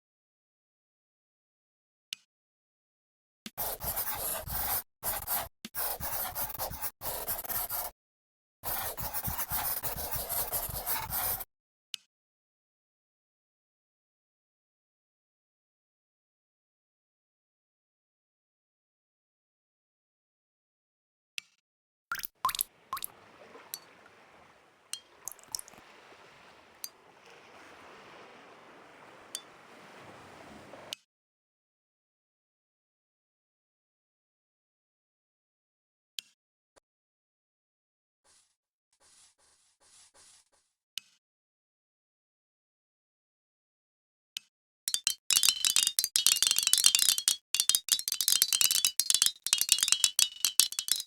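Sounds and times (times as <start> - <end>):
scratchy rubbing on a surface: 3.6 - 7.9, 8.7 - 11.4, 38.3 - 40.8.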